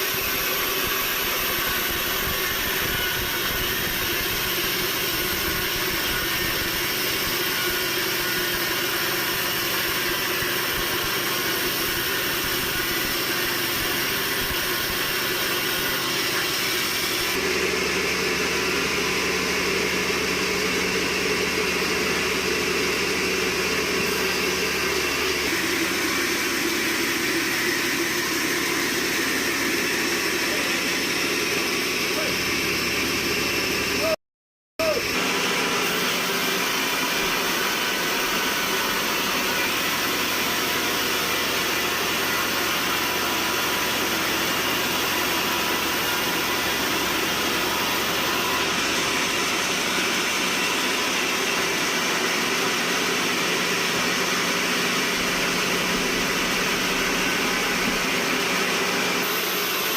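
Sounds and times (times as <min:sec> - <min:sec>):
mechanical whine: 0:00.0 - 0:34.2, 0:34.8 - 0:59.9
sawmill machinery drone: 0:00.0 - 0:34.2, 0:34.8 - 0:59.9.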